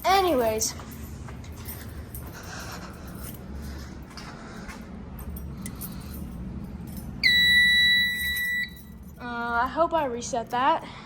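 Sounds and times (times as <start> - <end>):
high piezo buzzer beep: 7.2 - 8.9.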